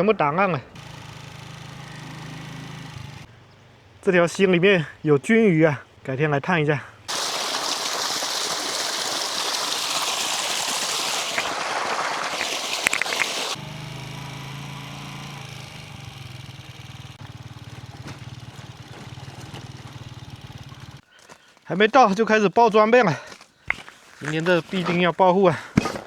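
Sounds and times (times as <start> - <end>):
vehicle engine humming: 0.6 - 4.0, 9.5 - 21.1
mountain stream rushing: 7.1 - 13.6.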